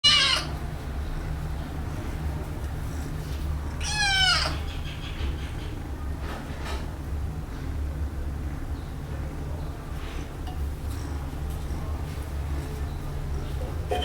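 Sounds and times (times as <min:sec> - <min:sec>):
kitten meowing: 0:00.0 - 0:00.5, 0:03.8 - 0:04.6.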